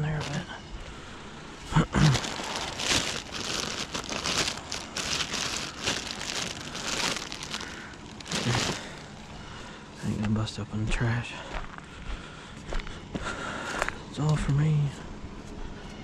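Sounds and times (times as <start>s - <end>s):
plastic trash bags rustling: 0.0s - 0.5s, 1.6s - 9.4s.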